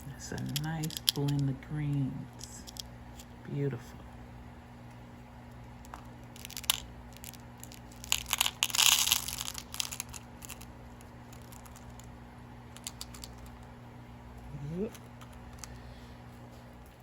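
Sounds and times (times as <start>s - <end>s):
plastic packaging crinkling: 5.9s - 13.7s.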